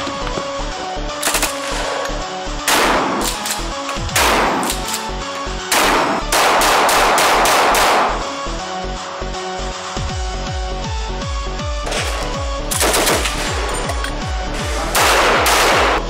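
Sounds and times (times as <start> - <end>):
gunshots: 1.1 - 8.4, 11.8 - 16.0
automatic gunfire: 2.7 - 3.4, 4.1 - 4.9, 5.7 - 8.3, 11.9 - 13.7, 15.0 - 16.0
electronic music with bass beat: 6.5 - 16.0.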